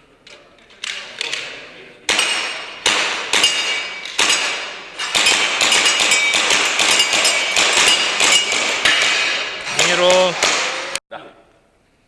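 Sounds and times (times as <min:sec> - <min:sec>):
pellets ringing on metal targets: 0:02.1 - 0:10.4
airsoft pistol shots: 0:02.1 - 0:11.0.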